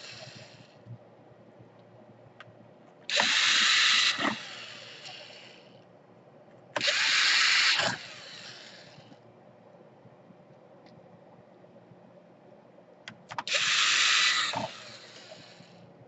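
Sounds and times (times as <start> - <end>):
electric screwdriver running: 3.1 - 5.6, 6.8 - 9.0, 13.4 - 15.6.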